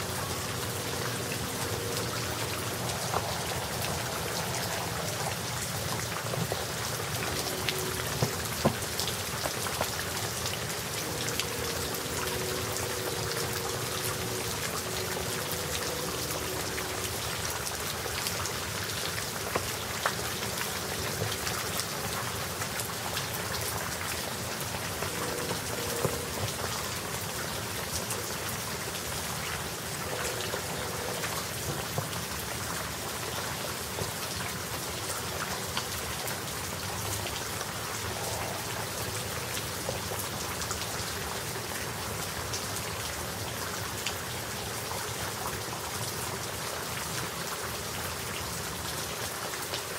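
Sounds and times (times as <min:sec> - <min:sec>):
steady rain hiss: 0:00.0 - 0:49.9
raindrops tapping close by: 0:00.1 - 0:49.9.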